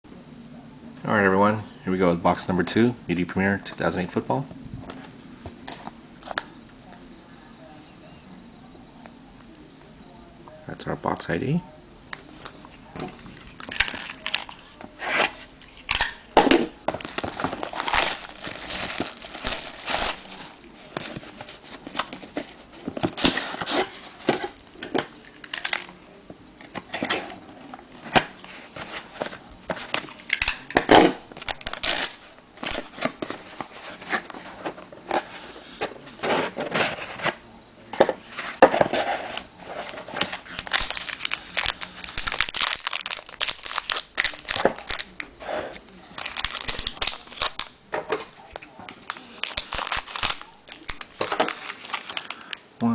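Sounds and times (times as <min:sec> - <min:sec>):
plastic and foil wrapping crinkling: 0:12.4 - 0:16.1, 0:16.8 - 0:26.0, 0:26.9 - 0:37.4, 0:38.3 - 0:52.6.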